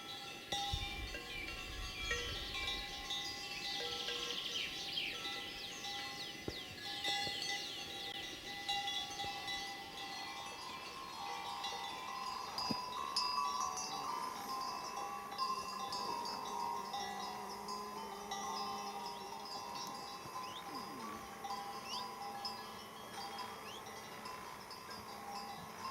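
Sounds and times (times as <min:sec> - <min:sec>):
horse collar bells ringing: 0:00.0 - 0:25.9.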